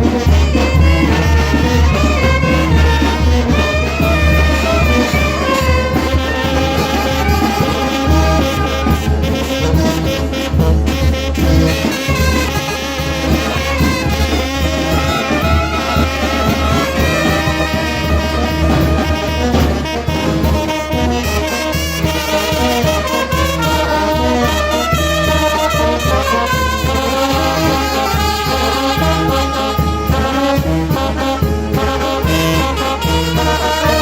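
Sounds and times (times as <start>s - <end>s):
brass band playing: 0.0s - 34.0s.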